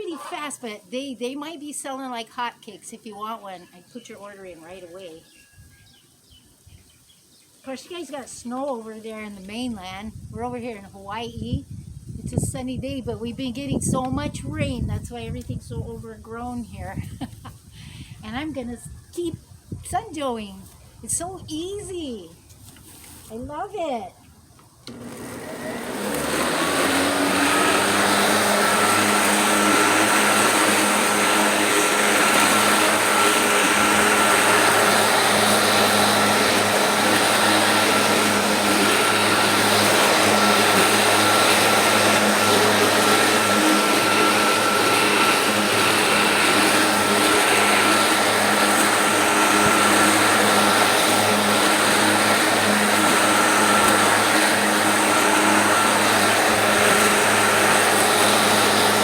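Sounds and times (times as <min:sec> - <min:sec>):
electric lawnmower motor whine: 0:24.7 - 0:59.0.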